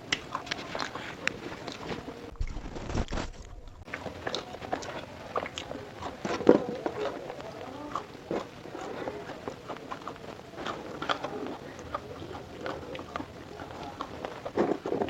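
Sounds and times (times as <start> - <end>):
mouth chewing fried food: 0.0 - 15.0
crisp crunches: 1.6 - 3.9.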